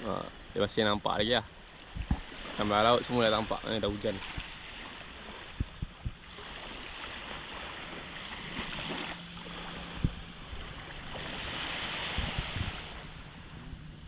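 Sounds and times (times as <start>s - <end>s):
waves lapping around boat: 0.0s - 14.0s
wind on microphone: 1.8s - 14.0s.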